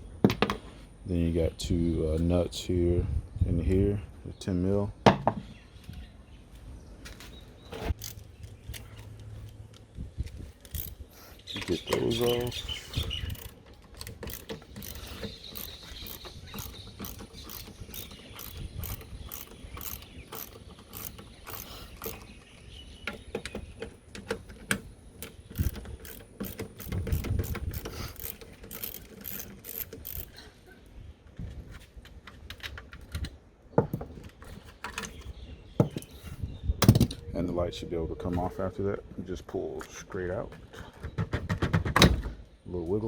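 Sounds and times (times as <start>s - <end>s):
ratchet wrench clicking: 8.0s - 8.9s, 10.6s - 11.0s, 13.2s - 22.3s, 25.5s - 30.4s.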